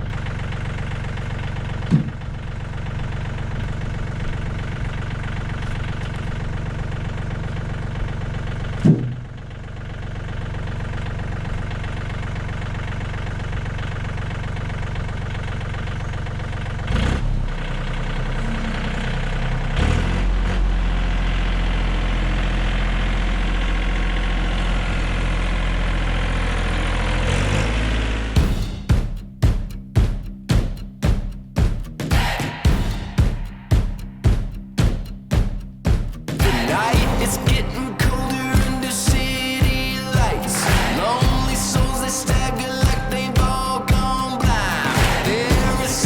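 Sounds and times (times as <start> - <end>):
engine idling: 0.0 - 28.9
music with a beat: 28.4 - 46.0
sharp knock: 28.4 - 46.0.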